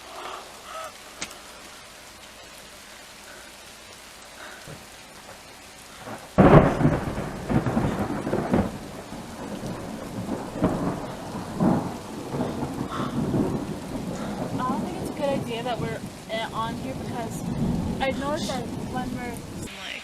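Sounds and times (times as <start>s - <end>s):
steady rain: 0.0s - 20.0s
thunder clap and rumble: 6.0s - 20.0s.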